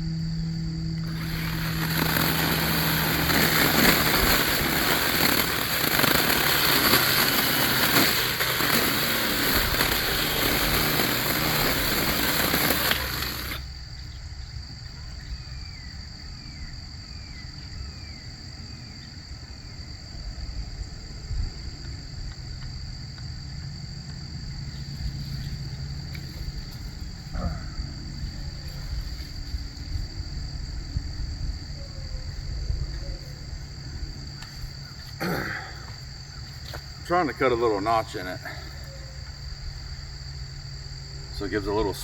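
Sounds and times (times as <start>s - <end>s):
electric chainsaw cutting tree: 1.0s - 13.8s.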